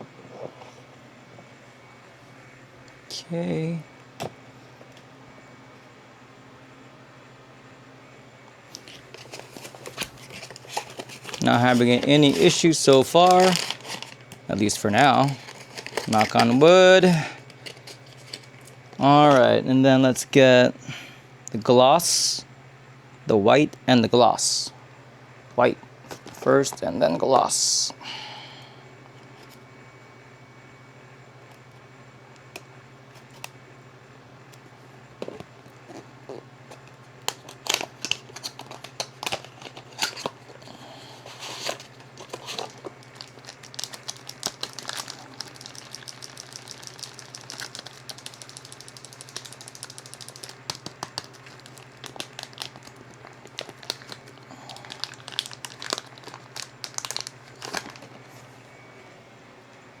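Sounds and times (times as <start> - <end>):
steady low hum: 0.0 - 60.0
plastic packaging crinkling and tearing: 8.7 - 19.4, 35.2 - 58.3.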